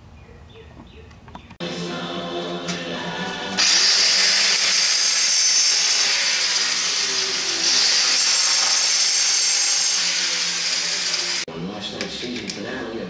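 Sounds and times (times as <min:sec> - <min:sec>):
power tool hissing whine: 0:03.5 - 0:11.5.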